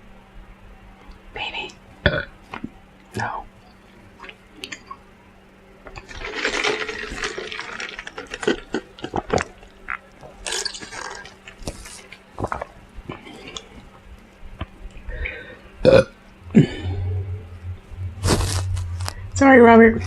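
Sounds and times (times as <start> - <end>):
person slurping a drink: 10.5 - 13.7.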